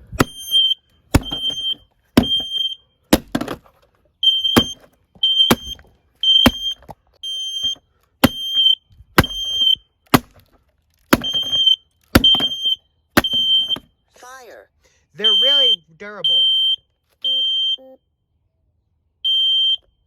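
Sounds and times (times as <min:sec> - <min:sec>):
smoke alarm beeping: 0:00.2 - 0:03.0, 0:04.2 - 0:09.9, 0:11.2 - 0:13.9, 0:15.2 - 0:18.0, 0:19.2 - 0:19.9
sharp knocks: 0:01.1 - 0:03.7, 0:04.5 - 0:06.8, 0:07.6 - 0:08.6, 0:09.2 - 0:10.5, 0:11.1 - 0:12.6, 0:13.2 - 0:13.9.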